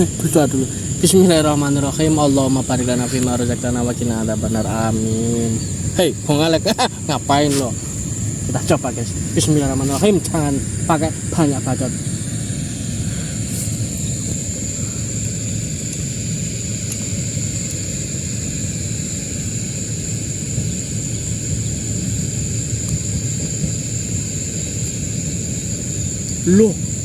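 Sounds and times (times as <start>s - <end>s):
low rumble: 0.0s - 16.0s
insects droning: 0.0s - 27.0s.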